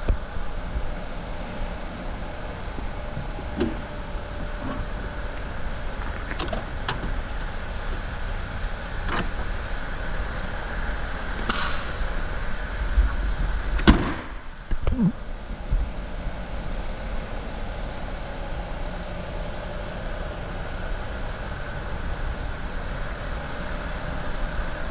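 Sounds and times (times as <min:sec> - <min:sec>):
vehicle engine idling: 0:00.0 - 0:13.9.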